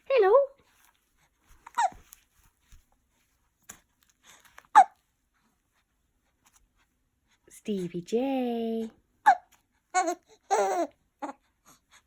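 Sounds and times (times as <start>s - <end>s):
hiccups: 4.7s - 5.0s, 9.2s - 9.5s.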